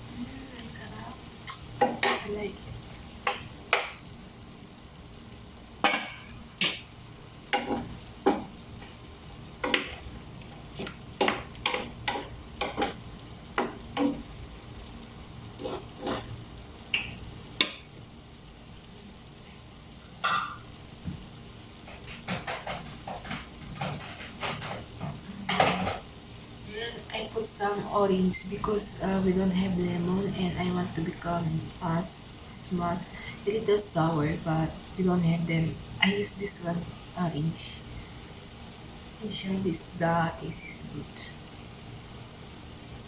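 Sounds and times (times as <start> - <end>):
food sizzling: 0.0 - 43.0
utensil scraping a pan: 15.6 - 16.4, 21.8 - 26.0.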